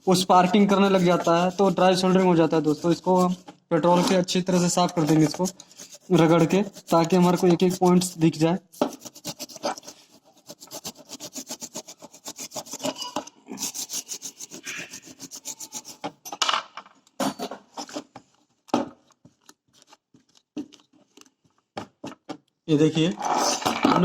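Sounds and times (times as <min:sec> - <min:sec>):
circuit board being scrubbed: 0:00.1 - 0:16.2.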